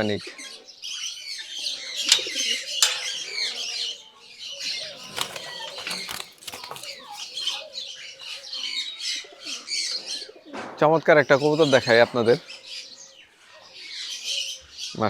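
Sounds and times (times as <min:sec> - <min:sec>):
sharp clicks: 0:02.0 - 0:03.4
pigeon wing flaps: 0:04.9 - 0:07.4.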